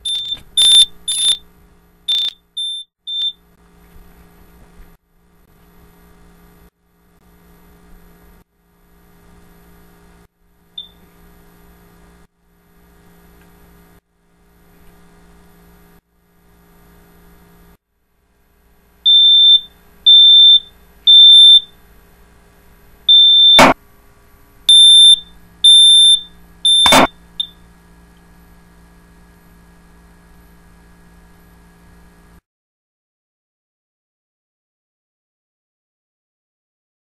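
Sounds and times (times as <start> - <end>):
smoke alarm beeping: 0.0 - 1.4, 2.1 - 3.4, 10.8 - 11.0, 19.0 - 21.7, 23.1 - 23.8, 24.7 - 27.6
loud sharp knocks: 26.9 - 27.1.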